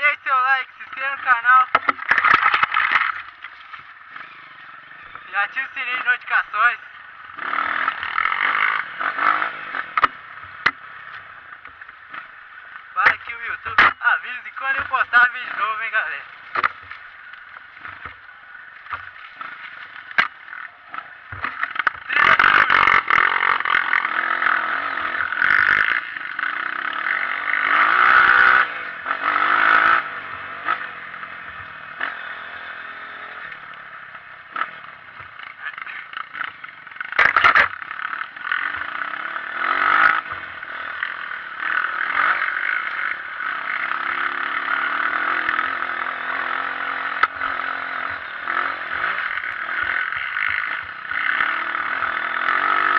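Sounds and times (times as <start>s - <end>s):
motorbike engine revving: 0.0s - 52.9s
knocks and clatter: 1.6s - 4.0s, 35.2s - 37.9s.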